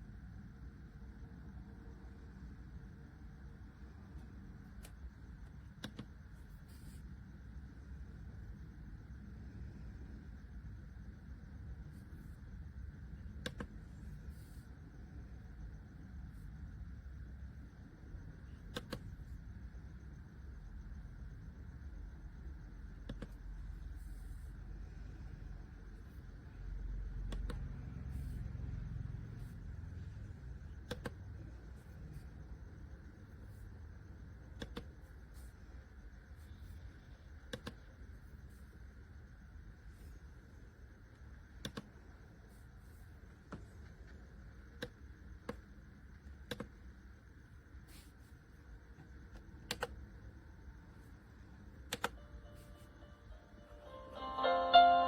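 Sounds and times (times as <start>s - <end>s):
steady low hum: 0.0s - 55.0s.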